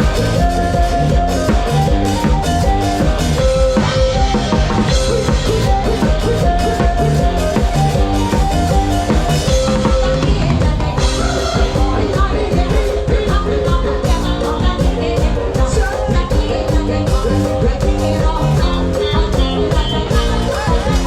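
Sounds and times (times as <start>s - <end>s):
drum kit beat: 0.0s - 21.0s
live rock band playing: 0.0s - 21.0s
person singing: 0.0s - 21.0s.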